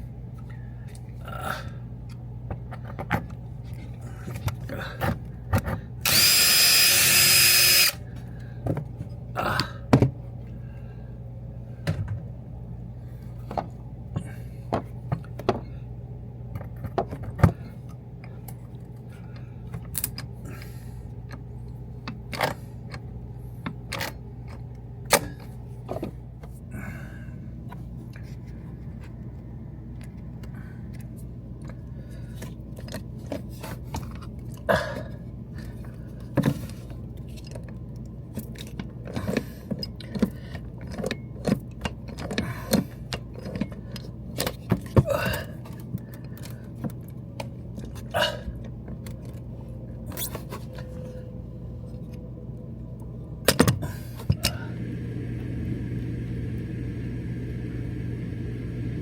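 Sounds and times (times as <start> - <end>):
electric drill drilling metal: 6.0 - 8.0.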